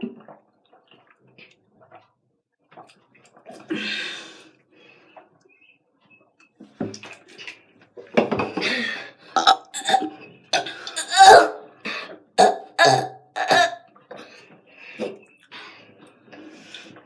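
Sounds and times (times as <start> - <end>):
person burping: 8.6 - 14.2.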